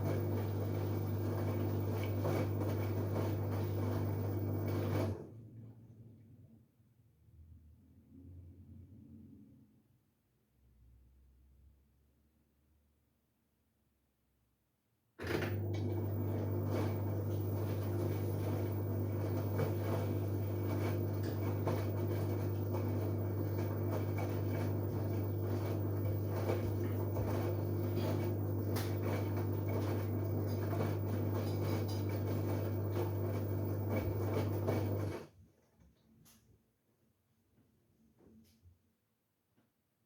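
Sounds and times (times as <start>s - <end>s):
washing machine humming: 0.0s - 5.5s, 15.2s - 35.3s.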